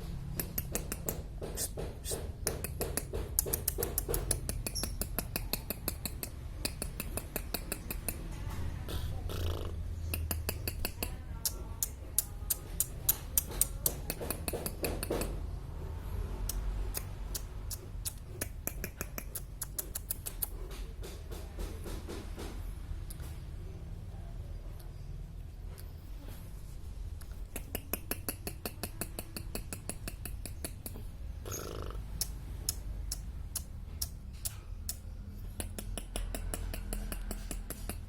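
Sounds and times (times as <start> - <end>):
lovebird chirping: 3.4 - 8.1, 30.0 - 33.3.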